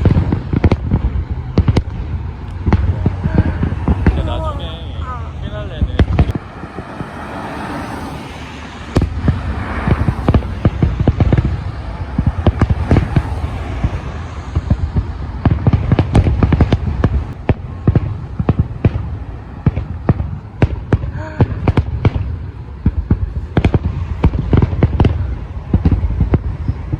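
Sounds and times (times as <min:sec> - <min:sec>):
steady noise: 0:00.0 - 0:19.6
fireworks bangs and crackles: 0:00.0 - 0:26.9.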